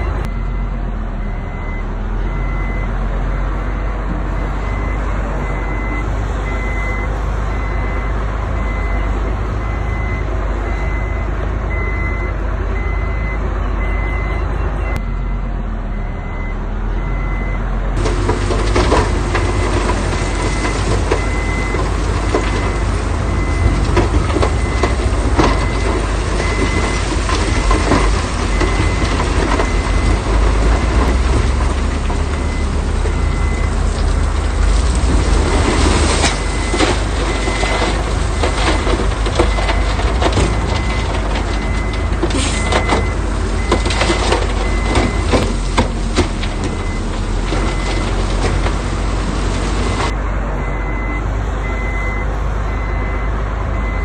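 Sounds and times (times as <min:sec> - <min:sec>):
diesel engine running: 0:00.0 - 0:54.0
reversing alarm beeping: 0:00.1 - 0:31.6, 0:32.2 - 0:33.8, 0:35.5 - 0:45.5, 0:49.9 - 0:54.0
rough clattering rumble: 0:17.9 - 0:50.2.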